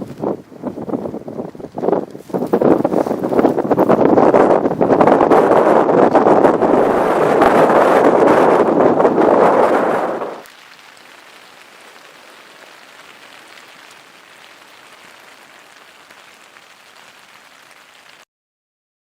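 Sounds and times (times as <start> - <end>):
wind blowing over microphone: 0.0 - 10.5.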